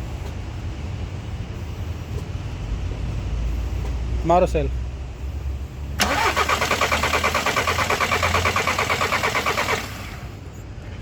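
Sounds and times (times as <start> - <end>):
starter motor cranking diesel engine: 6.0 - 10.5.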